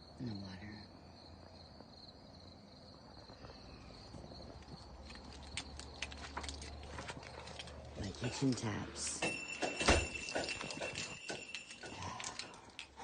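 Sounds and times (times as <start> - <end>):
insect trill: 0.0 - 13.0.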